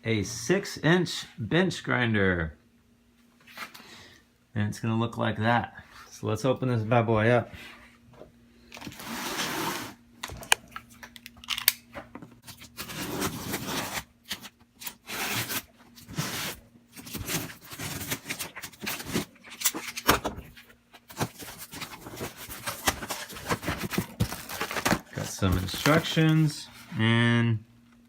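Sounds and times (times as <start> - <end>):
cardboard flaps scraping: 9.0 - 10.0, 12.5 - 27.0
packing tape tearing: 12.4 - 20.3, 21.1 - 26.4.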